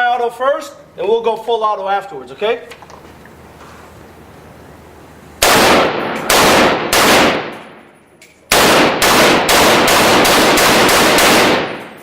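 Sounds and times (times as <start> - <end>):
rifle shots echoing: 5.4 - 7.8, 8.5 - 12.0.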